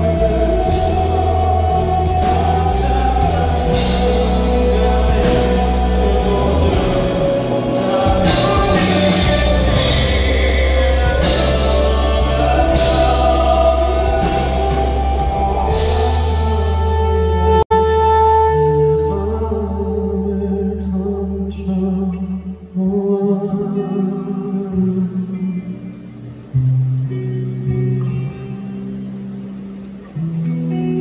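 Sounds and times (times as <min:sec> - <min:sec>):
drum and cymbal hits: 0:00.0 - 0:17.0
live band playing loudly: 0:00.0 - 0:19.0.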